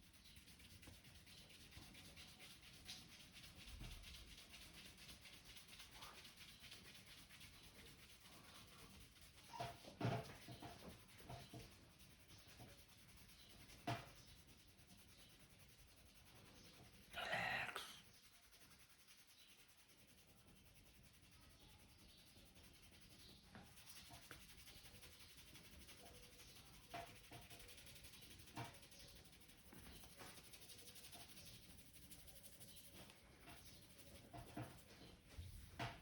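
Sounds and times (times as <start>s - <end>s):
hands rubbing hair and scalp: 23.7s - 36.0s.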